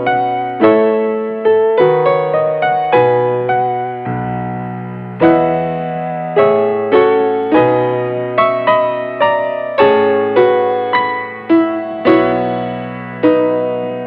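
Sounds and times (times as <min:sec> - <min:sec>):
slow solo piano: 0:00.0 - 0:14.0.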